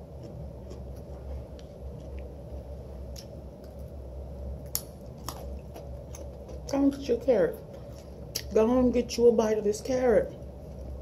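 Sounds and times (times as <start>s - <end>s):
person chewing food: 0.0s - 3.9s, 4.6s - 6.7s
steady low hum: 0.0s - 11.0s.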